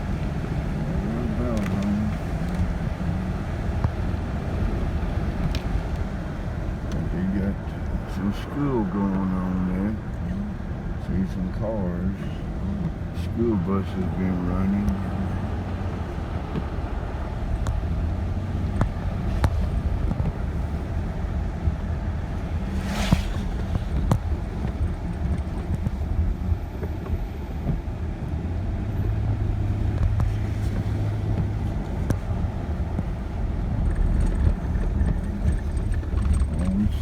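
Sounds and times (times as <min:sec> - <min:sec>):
engine and tyres rumbling: 0:00.0 - 0:37.0.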